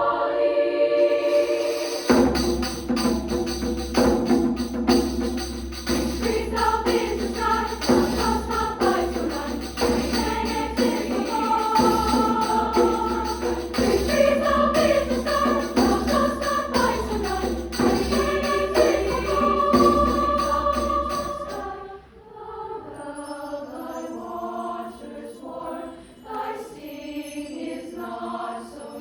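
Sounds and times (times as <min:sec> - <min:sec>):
treble choir singing: 0:00.0 - 0:29.0
sharp percussive strokes: 0:01.0 - 0:21.8.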